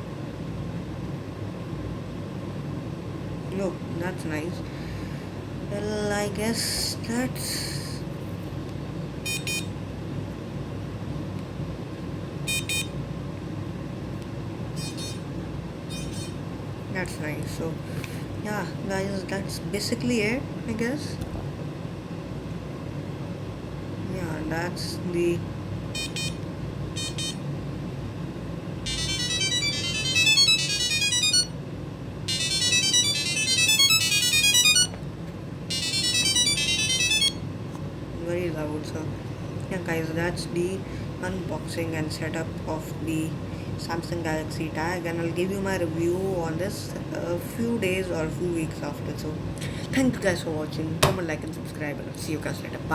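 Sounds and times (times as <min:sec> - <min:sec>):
steady low hum: 0:00.0 - 0:52.9
electronic ringtone melody: 0:09.2 - 0:09.7, 0:12.5 - 0:12.9, 0:14.8 - 0:15.2, 0:15.9 - 0:16.4, 0:26.0 - 0:26.4, 0:27.0 - 0:27.4, 0:28.8 - 0:31.6, 0:32.3 - 0:35.0, 0:35.7 - 0:37.4
high electronic beeps: 0:09.3 - 0:09.7, 0:12.5 - 0:12.9, 0:14.8 - 0:15.2, 0:15.9 - 0:16.4, 0:26.0 - 0:26.4, 0:27.0 - 0:27.4.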